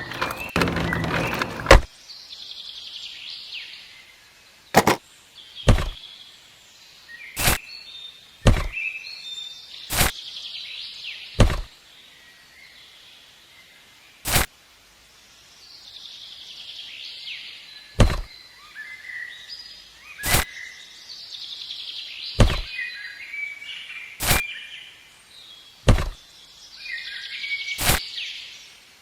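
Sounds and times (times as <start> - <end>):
sharp knocks: 4.8 - 5.0, 5.7 - 6.0, 11.4 - 11.7, 18.0 - 18.3, 22.4 - 22.7, 25.9 - 26.2.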